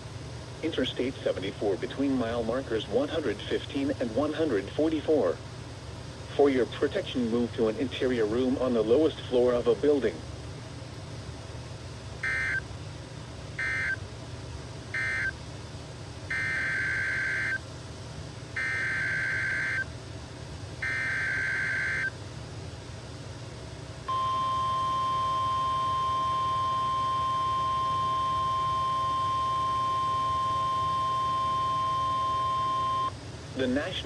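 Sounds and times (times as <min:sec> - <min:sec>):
steady warning alarm tone: 0:12.2 - 0:12.7, 0:13.6 - 0:14.0, 0:14.9 - 0:15.4, 0:16.3 - 0:17.6, 0:18.6 - 0:19.9, 0:20.8 - 0:22.2, 0:24.1 - 0:33.2
buzzy warbling data bursts: 0:16.3 - 0:17.6, 0:20.8 - 0:22.1.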